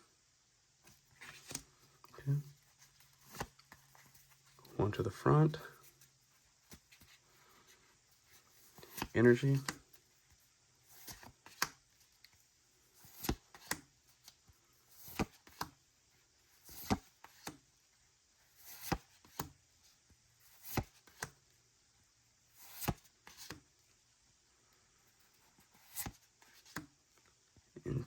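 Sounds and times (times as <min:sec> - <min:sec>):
trading cards rustling and clicking: 0:00.9 - 0:15.8, 0:16.6 - 0:17.6, 0:20.5 - 0:21.4, 0:25.2 - 0:27.3.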